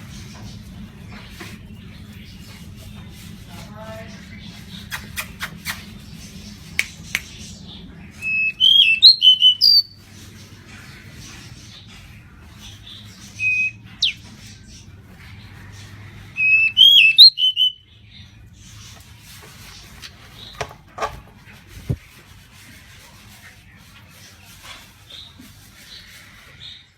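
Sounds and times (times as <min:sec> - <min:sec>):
bird singing whistled phrases: 0:08.2 - 0:09.9, 0:13.4 - 0:14.2, 0:16.4 - 0:17.8.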